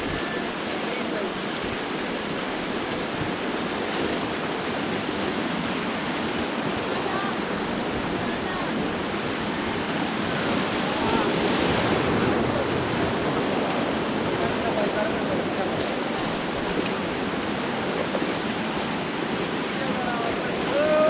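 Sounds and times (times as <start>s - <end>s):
river white water rushing: 0.0s - 21.0s
faint voices: 6.8s - 21.0s.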